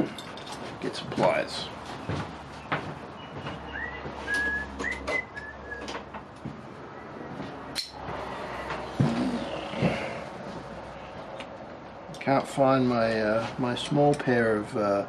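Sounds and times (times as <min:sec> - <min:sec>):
person whistling: 0:03.8 - 0:06.0.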